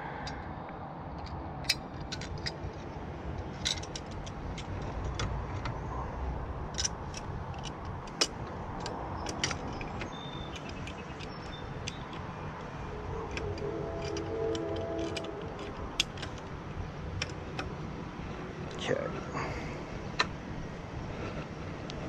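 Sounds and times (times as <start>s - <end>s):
metal tools clicking and clinking: 1.2s - 2.8s, 3.4s - 5.7s, 6.7s - 12.4s, 13.0s - 16.6s.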